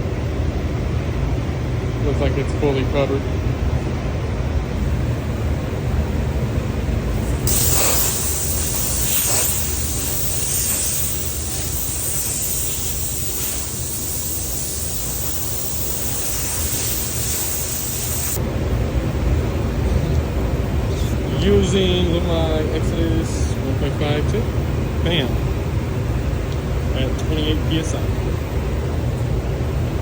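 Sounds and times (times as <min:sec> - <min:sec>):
compressed air hissing: 0:07.1 - 0:18.4.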